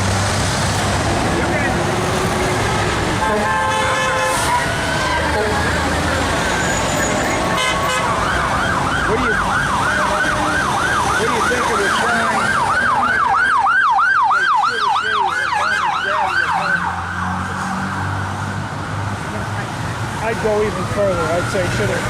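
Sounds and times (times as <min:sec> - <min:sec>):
highway traffic noise: 0:00.0 - 0:22.0
siren yelping: 0:04.5 - 0:18.3.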